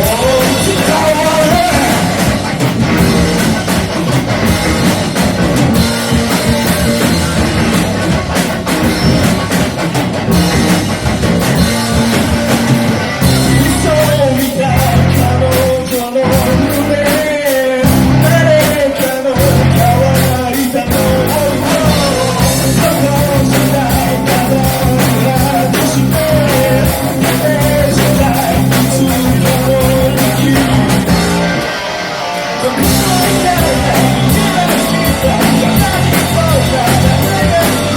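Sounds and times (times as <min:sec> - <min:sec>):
bass guitar: 0:00.0 - 0:37.9
drums: 0:00.0 - 0:37.9
electric guitar: 0:00.0 - 0:37.9
wavering melodic lead line: 0:19.5 - 0:37.9.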